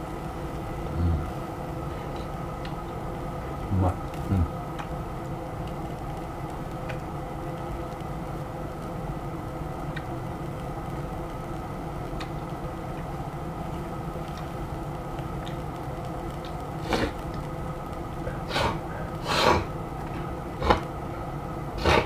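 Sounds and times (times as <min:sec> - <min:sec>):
short puff of breath: 0:18.5 - 0:19.6.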